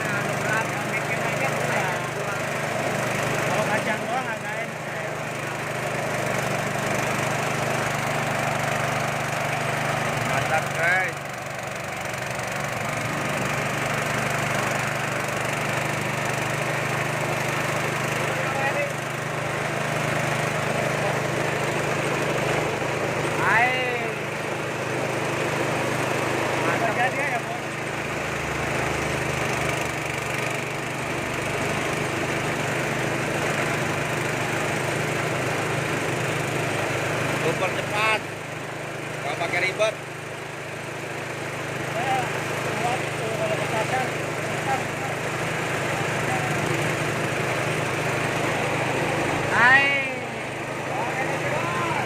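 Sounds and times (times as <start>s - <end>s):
grinding mill: 0.0s - 52.0s
stationary engine running steadily: 0.0s - 52.0s.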